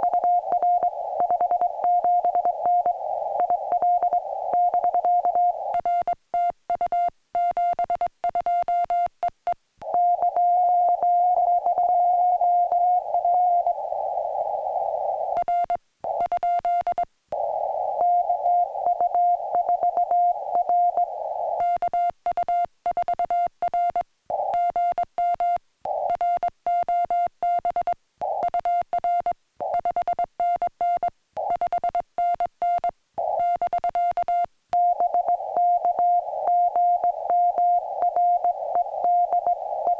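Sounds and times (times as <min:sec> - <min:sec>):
radio band noise hiss: 0:00.0 - 0:04.7, 0:12.8 - 0:15.4, 0:17.4 - 0:21.6, 0:35.1 - 0:39.9.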